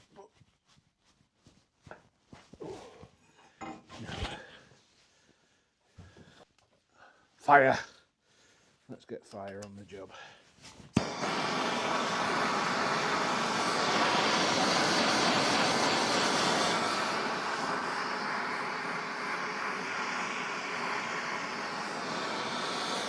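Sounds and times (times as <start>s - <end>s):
blowtorch hissing: 10.9s - 23.0s.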